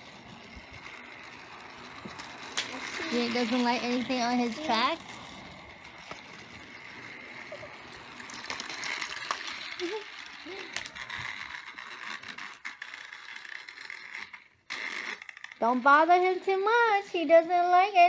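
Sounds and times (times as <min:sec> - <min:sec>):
toy train motor whirring: 0:00.0 - 0:18.0
wheels clicking and rattling on track: 0:00.0 - 0:18.0.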